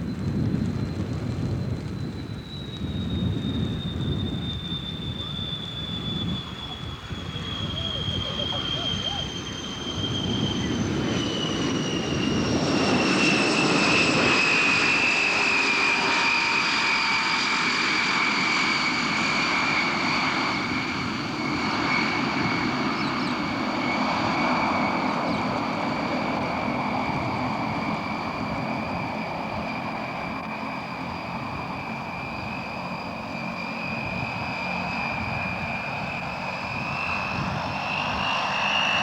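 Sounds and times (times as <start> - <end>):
aircraft engine whining: 0.0 - 39.0.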